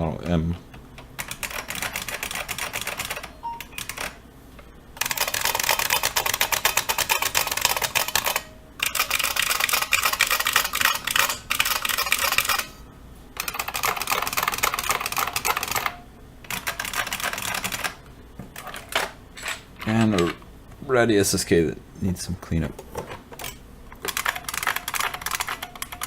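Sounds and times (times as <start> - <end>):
keyboard typing clatter: 0.7 - 4.2, 5.0 - 12.7, 13.4 - 18.0, 23.4 - 26.0.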